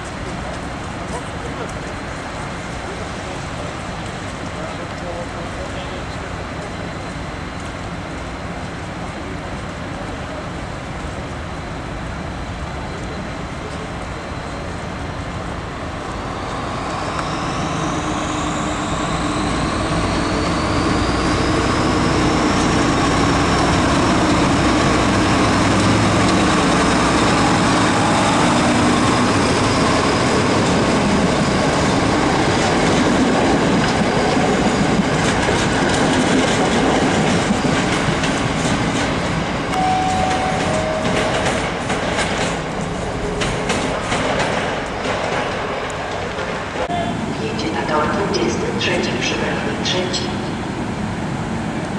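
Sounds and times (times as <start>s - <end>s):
train whine: 0.0s - 51.9s
train wheels clattering on rails: 19.5s - 46.9s.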